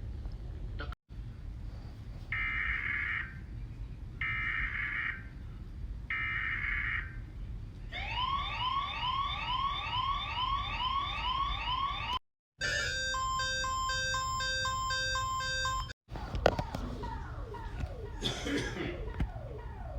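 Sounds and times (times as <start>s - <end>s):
rising whoop alarm tone: 7.9s - 15.9s, 16.6s - 19.9s.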